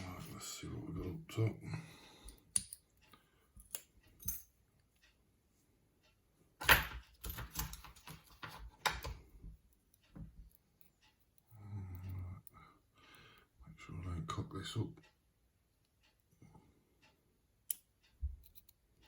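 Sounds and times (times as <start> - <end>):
metal lock parts clicking: 6.6 - 9.3, 18.4 - 18.8.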